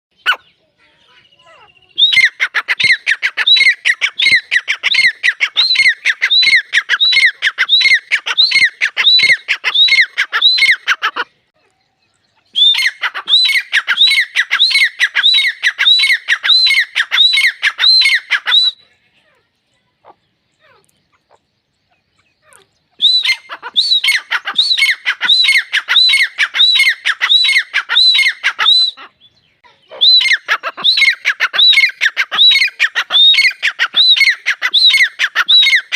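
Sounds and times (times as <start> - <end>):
francolin calling: 0.2 - 35.9.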